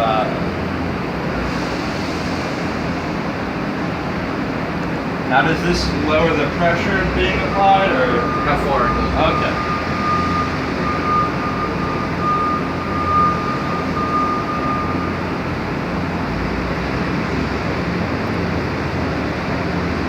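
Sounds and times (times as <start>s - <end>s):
hydraulic power unit humming: 0.0s - 20.0s
high electronic beep: 6.8s - 15.2s.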